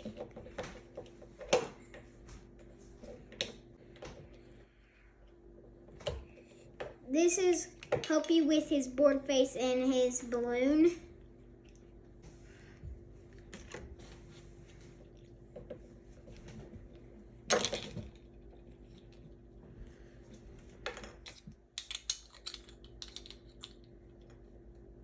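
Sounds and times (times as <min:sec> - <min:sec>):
plastic toy pieces clicking: 0:21.2 - 0:23.8.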